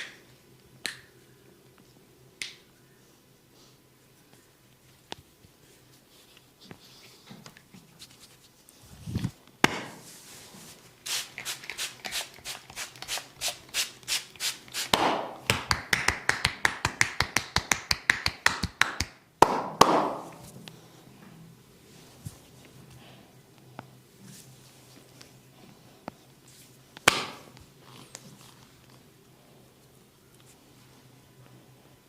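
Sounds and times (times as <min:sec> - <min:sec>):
hands slapping body: 0:14.9 - 0:20.4, 0:27.0 - 0:27.6.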